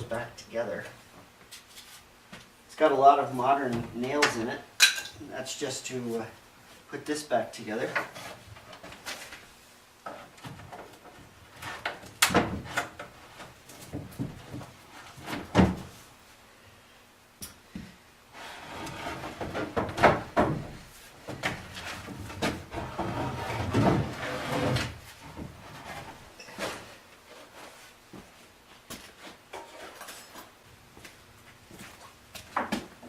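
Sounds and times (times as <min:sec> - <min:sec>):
wood scraping and clattering: 0:18.4 - 0:27.8.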